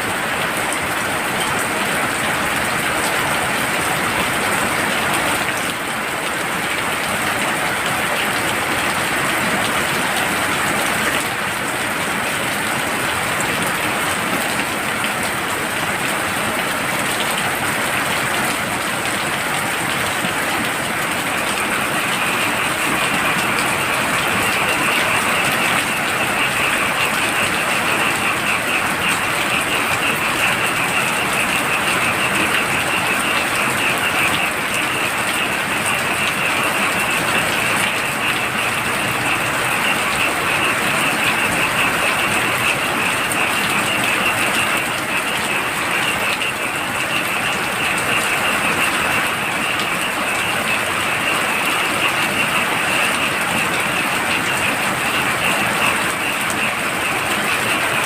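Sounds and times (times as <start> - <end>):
heavy rain: 0.0 - 58.0
frogs calling in fast trill: 16.1 - 58.0.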